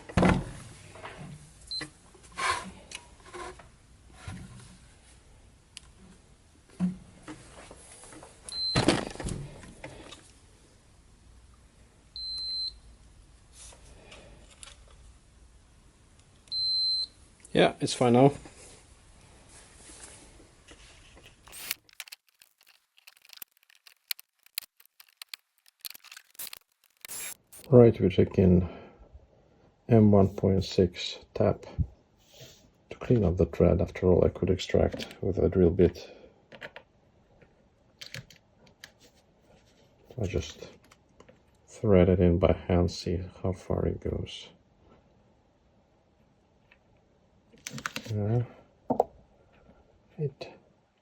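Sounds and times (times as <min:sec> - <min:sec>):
small parts and tools clicking: 0:21.3 - 0:27.7.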